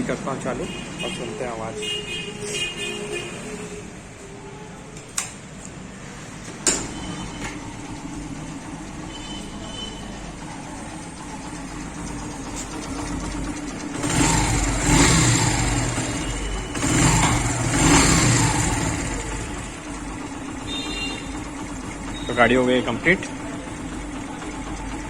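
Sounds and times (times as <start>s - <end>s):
motorcycle engine idling and revving: 6.4s - 25.0s.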